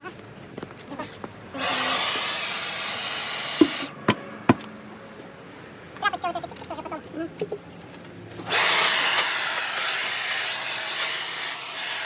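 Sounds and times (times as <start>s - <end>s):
power tool whine: 1.6s - 3.9s, 8.4s - 12.0s.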